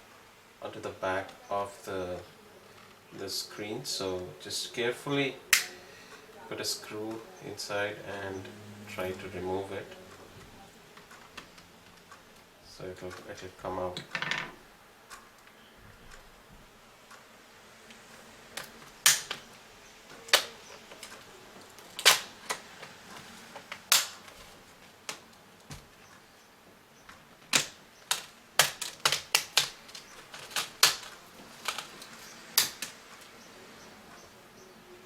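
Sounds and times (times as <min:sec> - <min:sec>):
plastic clips snapping loose: 0:05.5 - 0:05.8, 0:18.6 - 0:19.5, 0:20.2 - 0:21.2, 0:21.8 - 0:22.6, 0:23.6 - 0:24.4, 0:27.5 - 0:33.3.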